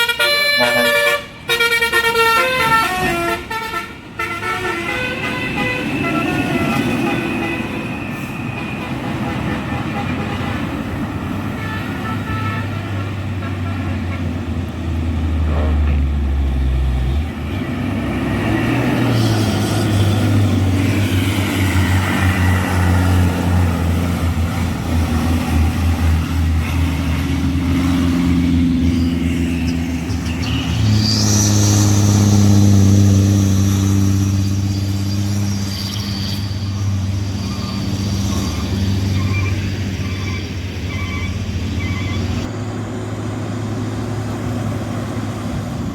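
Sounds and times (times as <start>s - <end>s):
diesel truck engine labouring: 0.0s - 45.9s
thin high whistle: 28.8s - 42.2s.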